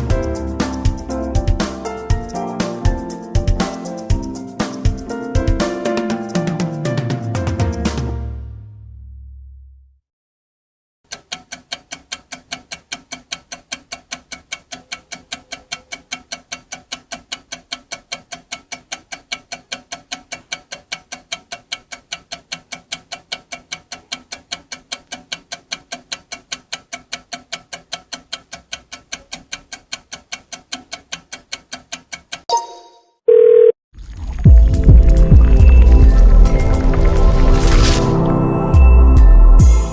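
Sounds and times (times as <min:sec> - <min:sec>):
sharp rhythmic clicks: 0:00.0 - 0:07.2, 0:11.1 - 0:32.5.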